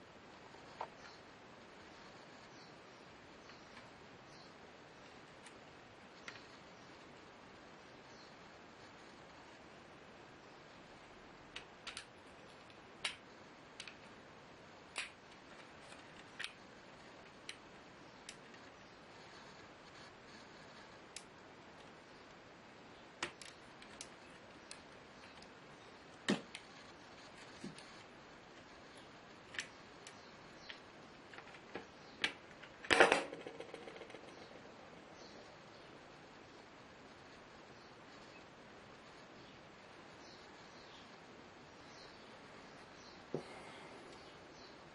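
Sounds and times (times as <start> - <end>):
faint steady hiss: 0.0 - 44.9
small parts clicking and tapping: 11.5 - 14.2, 14.9 - 20.0, 23.2 - 34.6.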